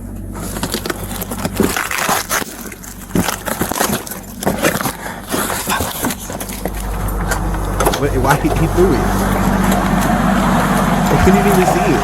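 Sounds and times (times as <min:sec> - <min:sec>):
packaging crinkling and rustling: 0:00.1 - 0:07.2.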